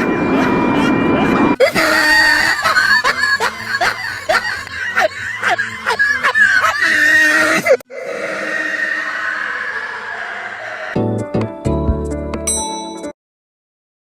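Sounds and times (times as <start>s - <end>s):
laughing sound effect: 0.2s - 7.8s.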